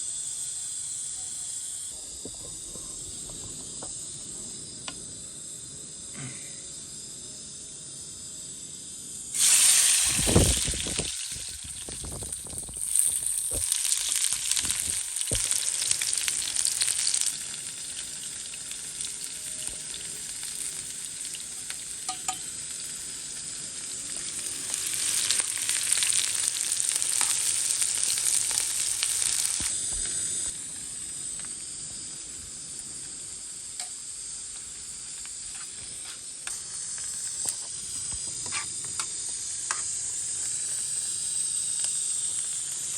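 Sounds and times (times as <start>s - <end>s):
food sizzling in hot oil: 9.3s - 42.9s.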